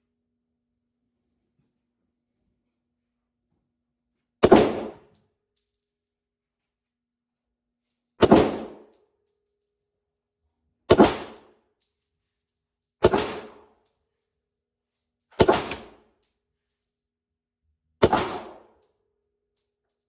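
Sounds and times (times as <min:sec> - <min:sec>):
pistol shots echoing: 0:04.4 - 0:05.0, 0:08.2 - 0:08.8, 0:10.9 - 0:11.4, 0:13.0 - 0:13.6, 0:15.4 - 0:15.9, 0:18.0 - 0:18.6.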